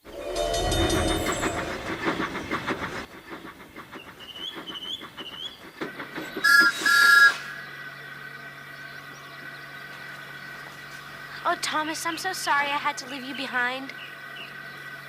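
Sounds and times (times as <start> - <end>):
steam locomotive chuffing: 0.0 - 8.7
two-tone steam whistle: 6.4 - 7.5.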